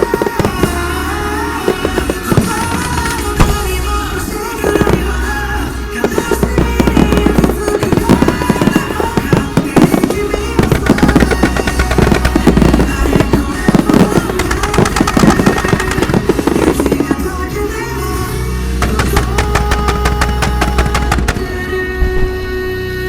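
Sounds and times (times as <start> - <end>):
fireworks bursting and crackling: 0.0 - 22.1
music playing: 0.0 - 23.0.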